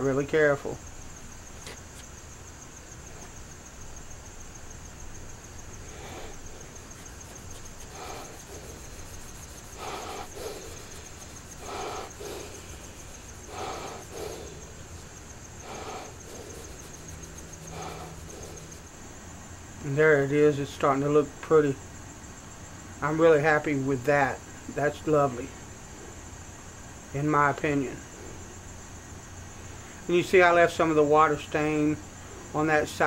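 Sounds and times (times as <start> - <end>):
soft rubbing strokes: 5.6 - 18.9.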